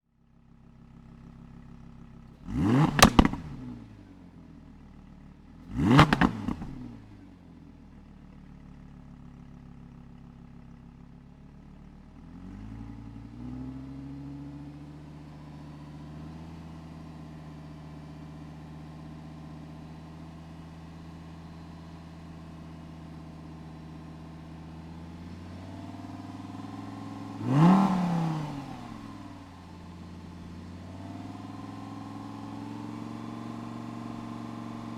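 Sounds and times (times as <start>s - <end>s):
car engine idling: 0.3s - 12.2s, 19.2s - 34.9s
engine revving: 2.4s - 3.9s, 5.6s - 7.1s, 25.1s - 34.9s.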